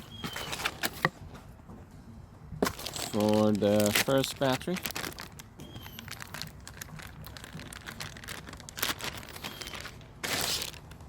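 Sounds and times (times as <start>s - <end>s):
cardboard box clicks and crinkles: 2.6s - 10.9s
packaging rustle: 2.6s - 11.0s.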